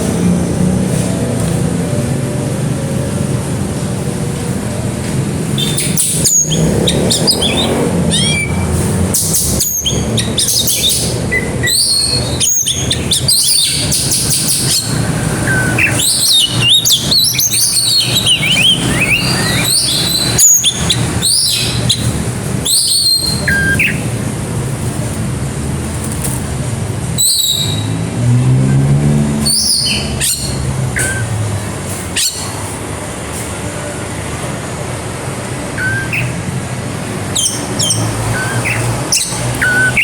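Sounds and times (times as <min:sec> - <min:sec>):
bird singing varied song: 0:05.3 - 0:24.2, 0:27.2 - 0:28.0, 0:29.3 - 0:32.8, 0:35.7 - 0:36.6, 0:37.2 - 0:40.0.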